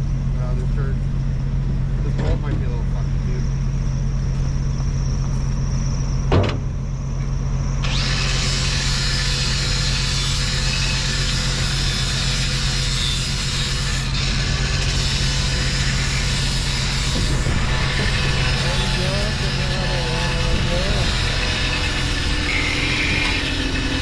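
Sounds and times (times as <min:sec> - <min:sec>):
engine idling hum: 0:00.0 - 0:24.0
wire brush grinder scouring metal: 0:07.8 - 0:24.0.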